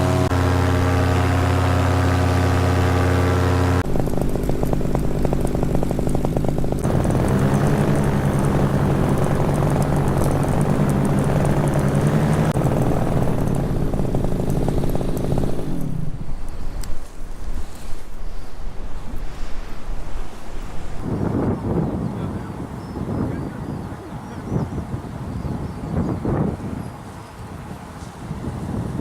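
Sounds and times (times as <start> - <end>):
paramotor engine humming: 0.0 - 17.7.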